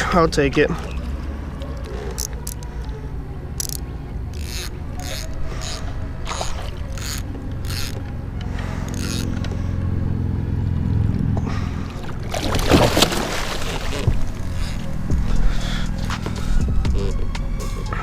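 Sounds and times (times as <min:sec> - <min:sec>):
low steady rumble: 0:01.0 - 0:12.5
water splashing: 0:03.9 - 0:09.1, 0:11.4 - 0:18.0.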